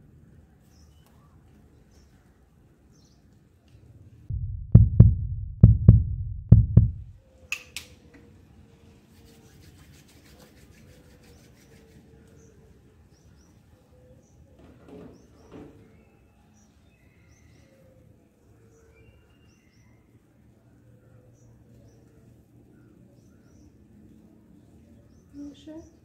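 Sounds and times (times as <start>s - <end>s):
heavy low thumps: 4.3s - 7.1s.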